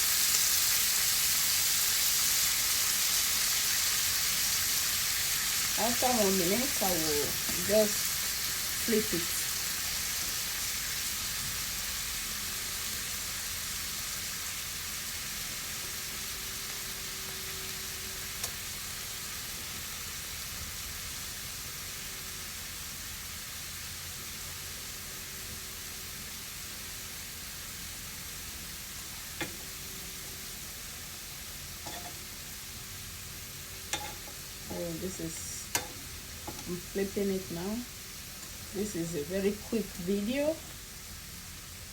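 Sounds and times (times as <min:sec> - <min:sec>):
shrimp sizzling in a pan: 0:00.0 - 0:41.9.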